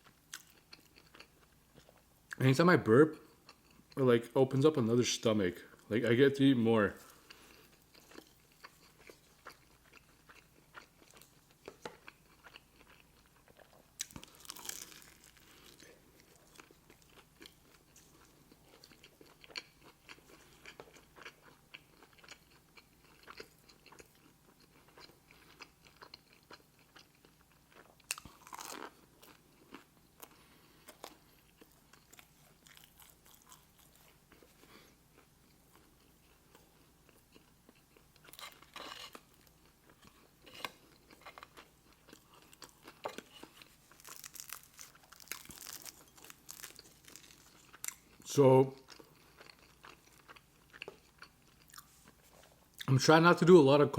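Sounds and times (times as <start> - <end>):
soft chewing: 0.0 - 2.4, 3.2 - 4.0, 6.8 - 52.9
crunching bites: 14.0 - 15.8, 40.0 - 48.2.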